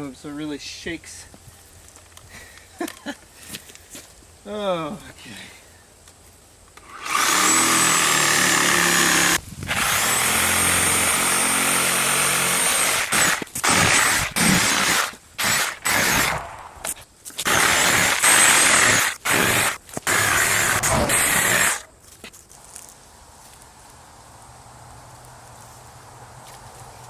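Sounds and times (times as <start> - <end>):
reciprocating saw cutting roots: 6.8 - 22.0.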